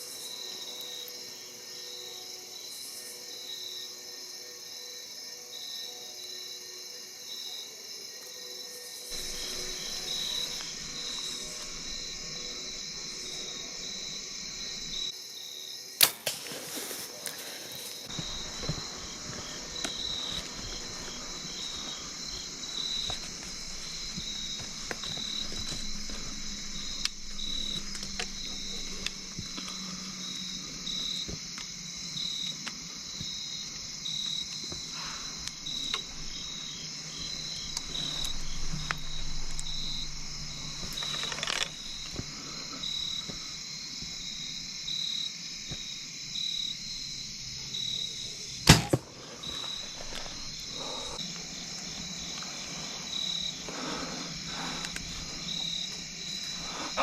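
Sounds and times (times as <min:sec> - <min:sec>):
crickets chirping: 0:00.0 - 0:57.0
bow string snap: 0:16.0 - 0:17.1.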